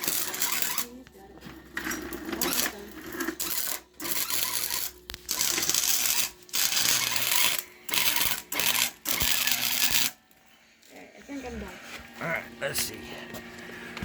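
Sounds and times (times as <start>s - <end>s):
arc welding crackling hiss: 0.0s - 1.0s, 3.4s - 10.2s.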